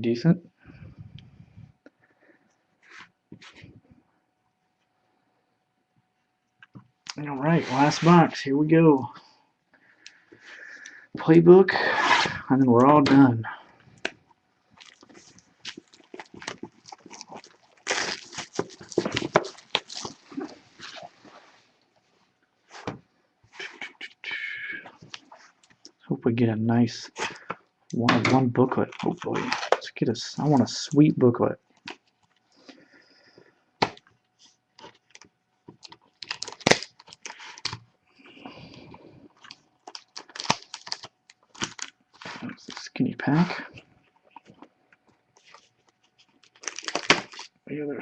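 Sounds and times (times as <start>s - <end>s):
card packaging crackling and tearing: 7.2s - 8.4s, 11.7s - 12.5s, 14.8s - 21.2s, 28.2s - 30.8s, 34.8s - 37.8s, 39.4s - 43.4s, 45.4s - 47.6s
wrappers crinkling: 14.7s - 21.7s, 34.8s - 37.8s, 38.6s - 42.9s, 45.3s - 47.6s.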